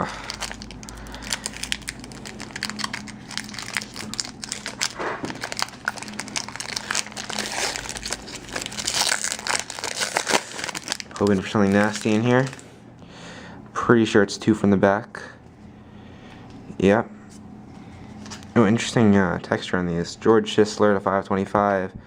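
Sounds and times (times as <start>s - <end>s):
plastic wrapper crinkling: 0.0s - 12.7s.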